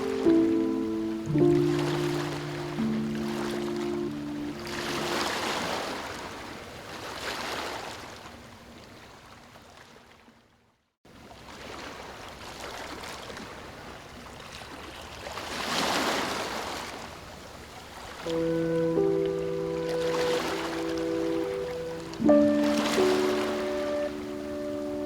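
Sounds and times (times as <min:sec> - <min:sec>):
large wave breaking: 0:00.0 - 0:06.4, 0:18.3 - 0:25.0
ocean waves surging: 0:00.0 - 0:07.9, 0:18.2 - 0:25.0.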